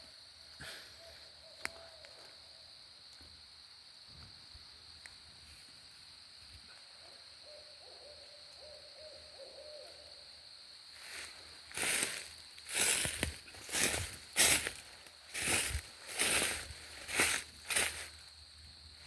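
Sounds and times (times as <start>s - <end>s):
distant owl hooting: 7.4s - 10.3s.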